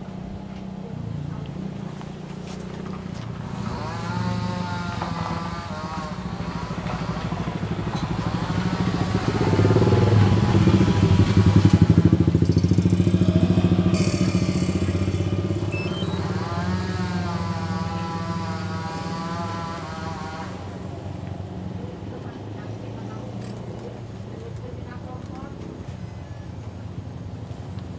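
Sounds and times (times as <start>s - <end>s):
machine engine running: 6.1s - 19.6s.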